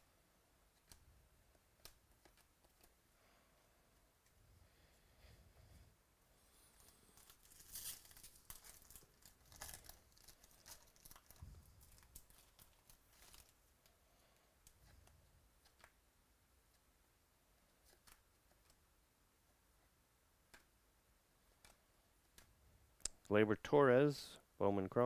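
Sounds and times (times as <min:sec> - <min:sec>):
foil wrapper tearing: 0:07.0 - 0:13.6.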